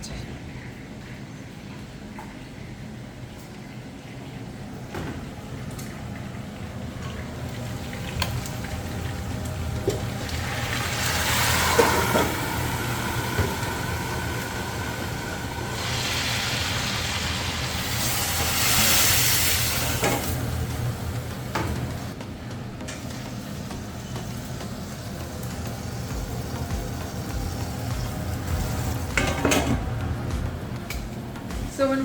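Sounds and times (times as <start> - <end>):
low hum: 6.8 - 18.9
meat sizzling in a pan: 10.3 - 20.1.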